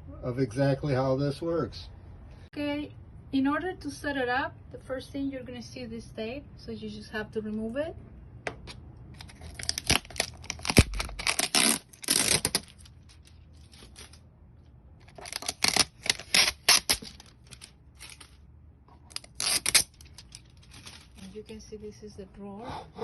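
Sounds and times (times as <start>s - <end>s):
tape peeling crackling rips: 8.7s - 14.2s, 15.0s - 18.4s, 19.0s - 21.4s.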